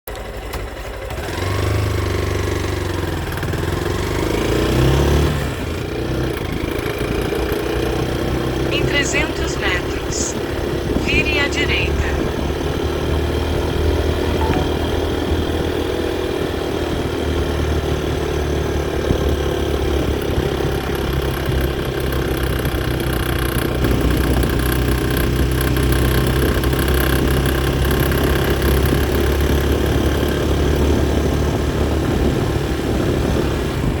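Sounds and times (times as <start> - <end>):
motorcycle engine running: 0.1 - 8.7.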